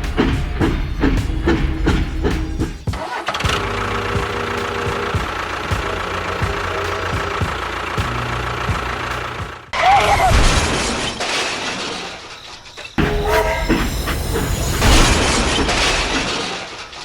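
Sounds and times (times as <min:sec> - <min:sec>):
music beat: 0:00.0 - 0:09.7
engine starting and idling: 0:00.0 - 0:17.0.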